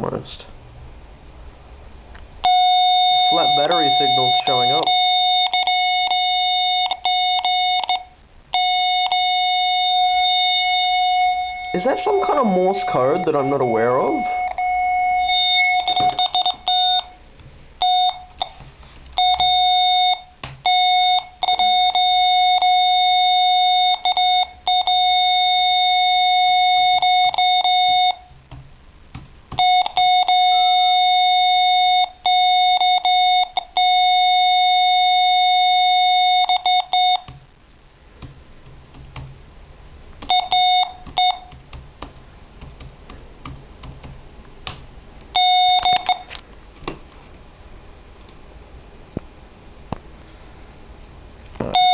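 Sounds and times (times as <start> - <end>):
electronic beeper beeping: 2.4 - 17.2, 17.8 - 18.6, 19.2 - 28.3, 29.6 - 37.4, 40.3 - 41.5, 45.4 - 46.3, 51.6 - 51.9.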